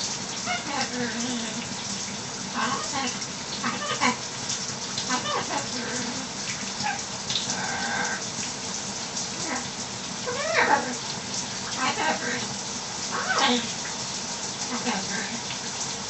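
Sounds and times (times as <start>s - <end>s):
shower water running: 0.0s - 16.0s
macaw squawking: 3.6s - 4.2s, 13.1s - 13.6s.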